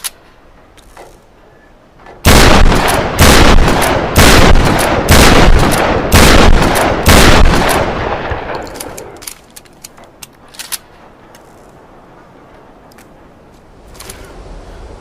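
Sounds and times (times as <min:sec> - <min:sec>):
shotgun blasts echoing: 0:02.2 - 0:09.2.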